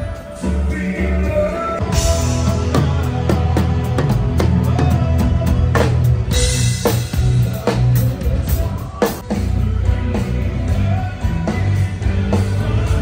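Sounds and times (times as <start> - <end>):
drum kit with cymbals: 0.0 - 13.0
electric guitar: 0.0 - 13.0
heavy bass line: 0.0 - 13.0.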